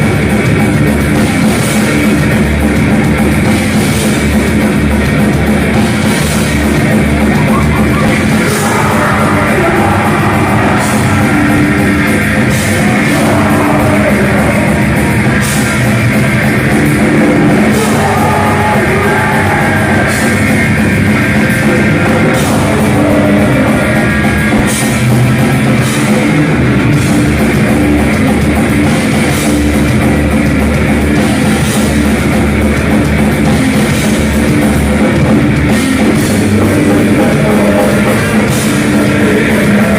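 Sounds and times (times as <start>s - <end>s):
distorted electric guitars: 0.0s - 39.9s
drum kit with cymbal crashes: 0.0s - 39.9s
vocals: 7.2s - 27.7s, 35.6s - 39.9s.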